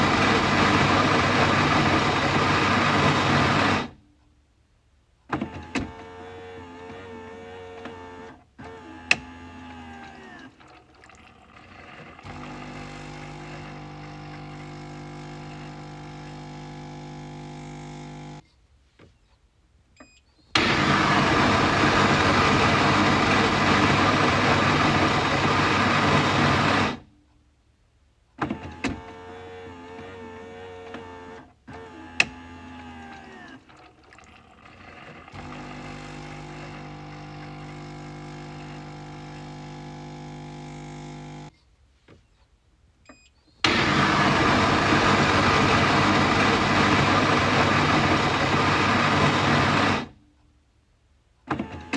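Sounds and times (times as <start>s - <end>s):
coffee machine motor hum: 0.0s - 4.0s, 11.4s - 18.4s, 20.6s - 27.0s, 34.2s - 41.5s, 43.7s - 50.2s
loud noisy coffee machine burst: 0.0s - 4.0s, 20.6s - 27.0s, 43.7s - 50.1s.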